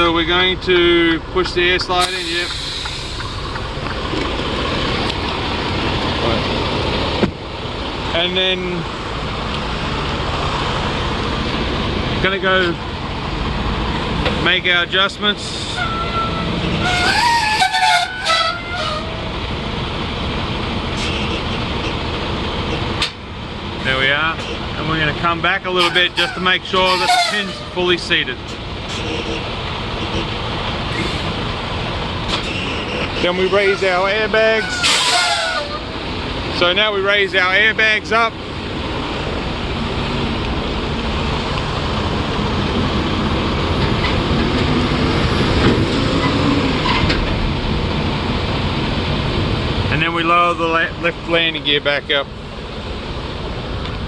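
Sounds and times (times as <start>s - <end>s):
diesel engine running: 0.0s - 54.0s
short air hiss: 2.0s - 3.4s
brief high squeal: 15.6s - 19.1s, 32.4s - 33.8s, 34.6s - 35.8s
low rumble: 38.4s - 50.0s.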